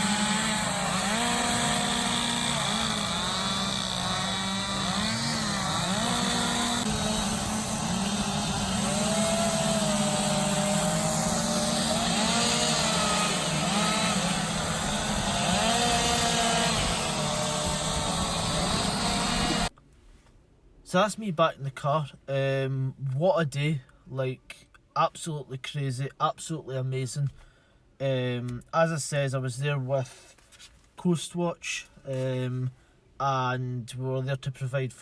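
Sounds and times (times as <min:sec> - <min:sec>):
chainsaw engine revving: 0:00.0 - 0:19.7.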